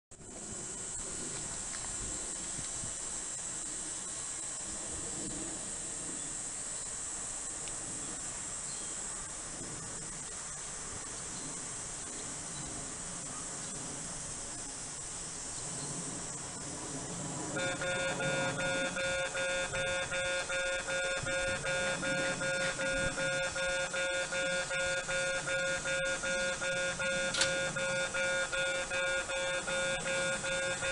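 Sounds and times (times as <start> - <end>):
background hiss: 0.1 - 30.9
level crossing electronic warning bell: 17.6 - 30.9.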